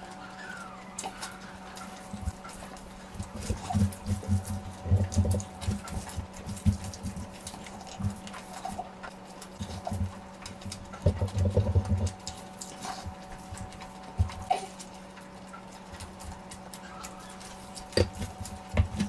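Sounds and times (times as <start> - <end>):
faint steady hum: 0.0 - 19.0
wet chewing and mouth smacks: 12.0 - 19.0.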